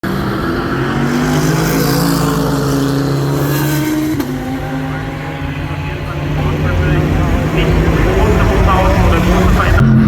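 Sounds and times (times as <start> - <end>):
race car engine accelerating: 0.0 - 10.0.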